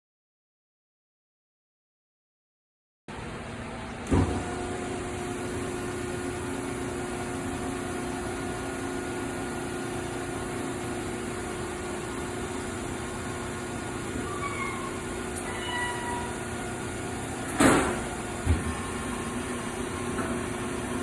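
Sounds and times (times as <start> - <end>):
motor starting clunk: 4.0 - 5.9, 17.4 - 21.0.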